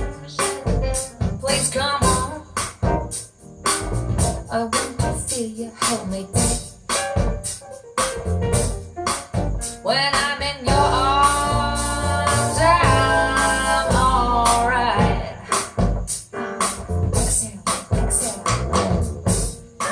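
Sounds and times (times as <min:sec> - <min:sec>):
recorded song with drums and bass: 0:00.0 - 0:19.9
held melody line: 0:06.4 - 0:15.4.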